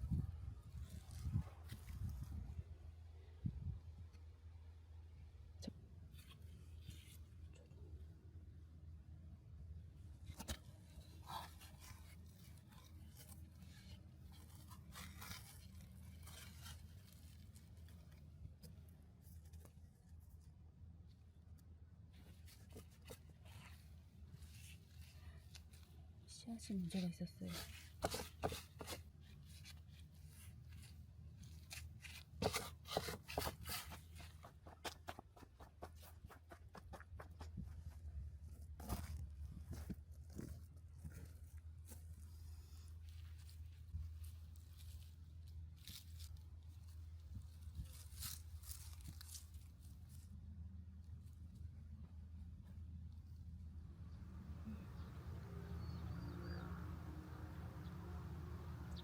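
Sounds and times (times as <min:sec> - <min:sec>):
scraping and tearing noises: 0:10.3 - 0:20.6, 0:27.4 - 0:51.7
low steady hum: 0:37.6 - 0:59.0
crisp clicks and crunches: 0:43.1 - 0:50.3.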